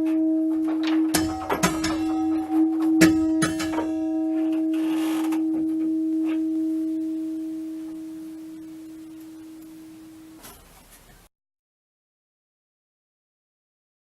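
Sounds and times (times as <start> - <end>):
church bell humming: 0.0 - 10.4.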